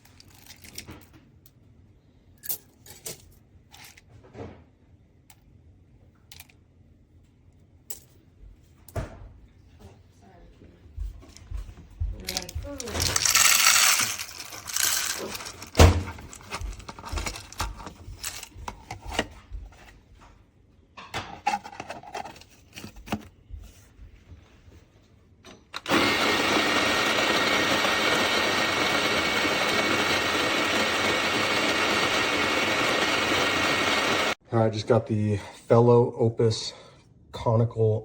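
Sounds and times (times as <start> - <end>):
coffee grinder motor: 12.3 - 18.5, 25.8 - 34.4.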